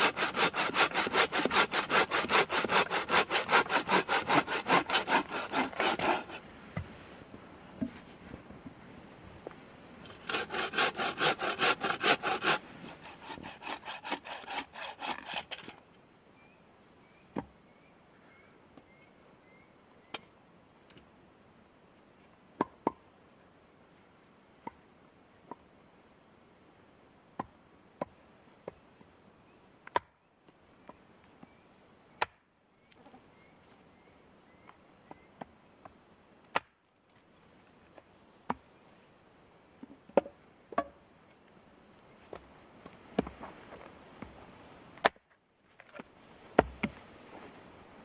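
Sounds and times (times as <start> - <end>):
saw cutting through wood: 0.0 - 6.4, 10.1 - 15.7.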